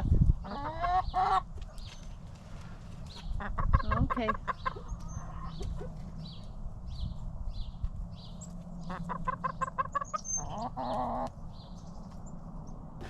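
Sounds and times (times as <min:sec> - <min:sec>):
hens clucking and calling: 0:00.4 - 0:01.6, 0:02.9 - 0:06.2, 0:08.4 - 0:11.4.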